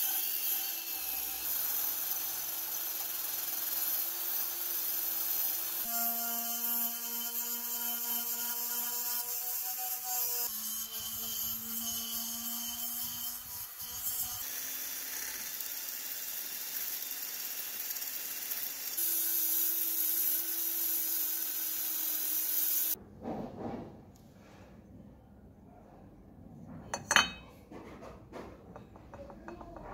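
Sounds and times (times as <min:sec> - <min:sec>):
power tool wire brush on metal: 0:00.0 - 0:23.0.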